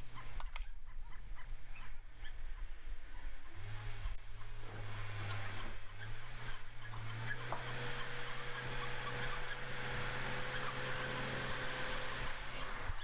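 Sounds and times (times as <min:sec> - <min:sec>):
truck engine running: 0:02.7 - 0:13.0.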